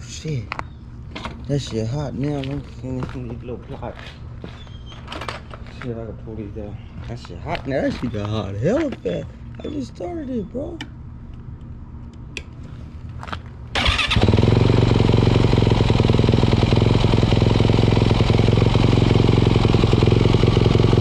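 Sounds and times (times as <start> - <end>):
dirt bike engine running: 13.8 - 21.0.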